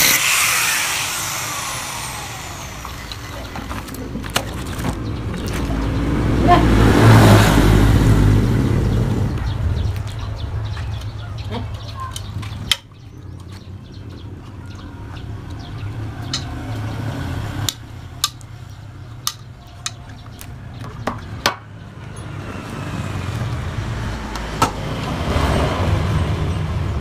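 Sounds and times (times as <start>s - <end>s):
steady low rumble: 0.8s - 19.7s.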